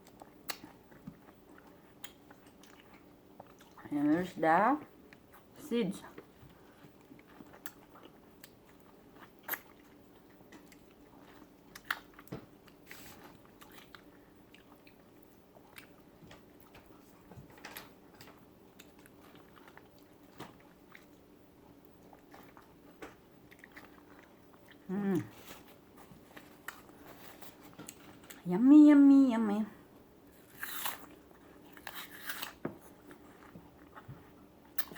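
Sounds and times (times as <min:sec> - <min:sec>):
person chewing and biting: 0:00.0 - 0:03.8, 0:06.5 - 0:17.0, 0:30.3 - 0:34.9
faint steady hum: 0:00.0 - 0:34.9.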